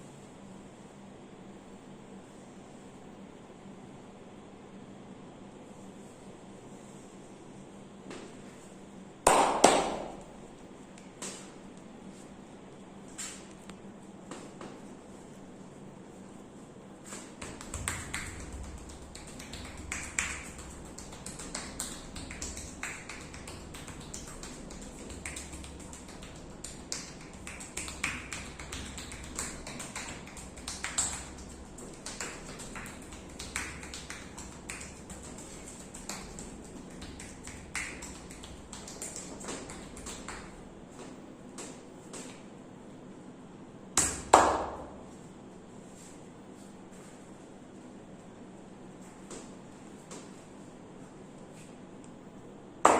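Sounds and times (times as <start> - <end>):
hands tapping and rubbing on body: 17.0 - 42.4.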